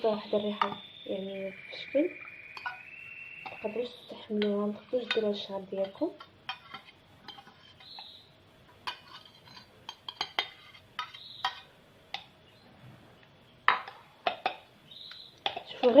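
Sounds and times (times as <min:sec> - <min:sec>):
metal utensil clinking on pan: 0:08.8 - 0:11.6.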